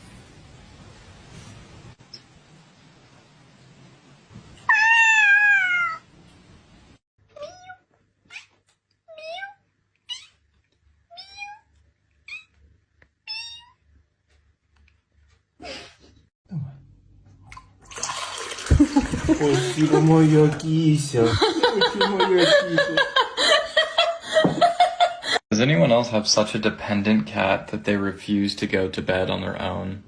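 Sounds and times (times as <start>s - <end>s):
cat meowing: 4.6s - 6.1s, 7.4s - 10.4s, 11.1s - 11.7s, 13.3s - 13.8s.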